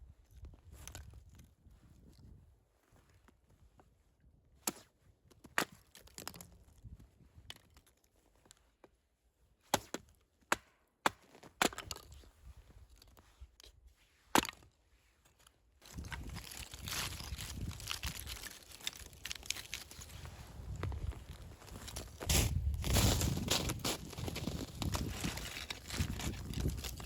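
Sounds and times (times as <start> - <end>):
firewood being chopped: 9.7 - 12.1.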